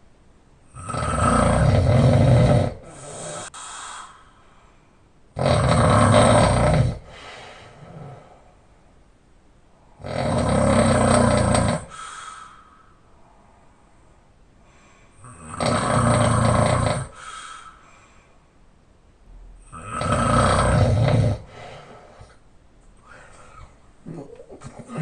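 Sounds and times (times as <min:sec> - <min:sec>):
person snoring: 0:00.7 - 0:04.2, 0:05.4 - 0:08.4, 0:10.0 - 0:12.6, 0:15.1 - 0:17.8, 0:19.6 - 0:22.4
soft breath: 0:02.8 - 0:05.1, 0:07.0 - 0:09.0, 0:11.8 - 0:15.2, 0:17.1 - 0:18.7, 0:21.4 - 0:23.9.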